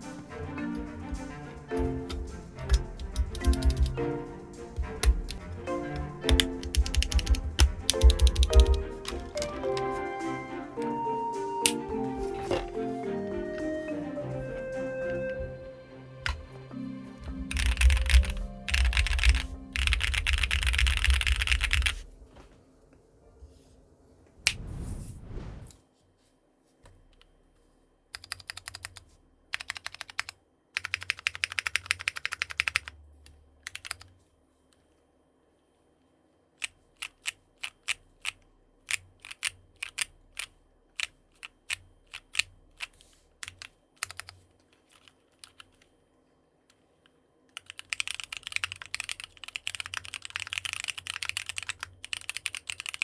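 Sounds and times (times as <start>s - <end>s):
mechanical keyboard typing: 0.8s - 4.1s, 4.8s - 10.0s, 17.2s - 22.1s, 28.2s - 32.9s, 33.6s - 34.1s, 36.6s - 45.9s, 47.5s - 53.0s.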